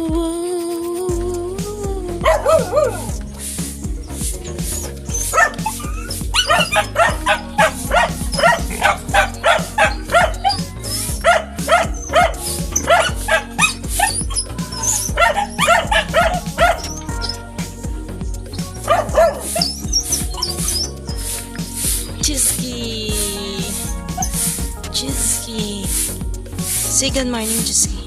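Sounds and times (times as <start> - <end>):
background music: 0.0 - 28.0
dog yipping and barking: 2.2 - 3.2, 4.7 - 17.4, 18.8 - 21.0.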